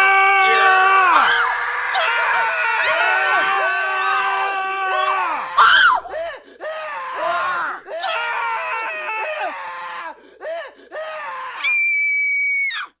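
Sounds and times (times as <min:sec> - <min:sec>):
long high-pitched shriek: 0:00.0 - 0:05.0, 0:11.6 - 0:12.9
people screaming and wailing: 0:00.0 - 0:10.2, 0:11.1 - 0:12.9.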